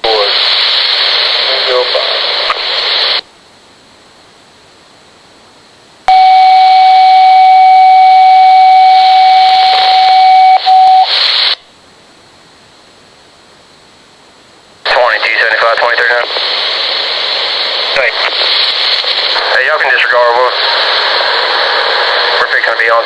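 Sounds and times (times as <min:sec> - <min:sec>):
radio static bursts: 0:00.0 - 0:03.2, 0:14.9 - 0:23.0
steady single-pitch radio tone: 0:06.1 - 0:11.6, 0:14.9 - 0:23.0.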